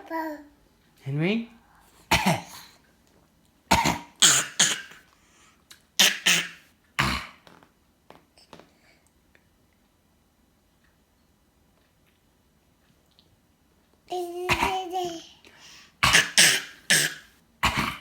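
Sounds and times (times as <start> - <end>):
person coughing: 2.1 - 2.7, 3.7 - 4.9, 16.0 - 18.0
faint small sounds: 6.7 - 16.0.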